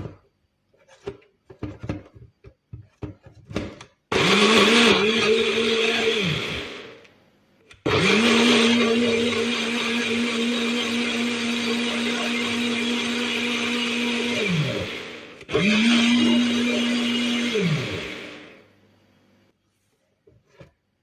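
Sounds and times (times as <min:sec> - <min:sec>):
blender motor running: 0:04.1 - 0:07.0, 0:07.8 - 0:18.7.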